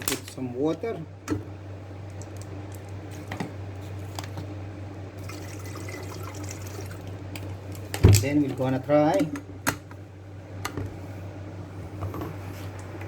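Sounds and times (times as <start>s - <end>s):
water pouring into kettle: 5.2s - 7.2s.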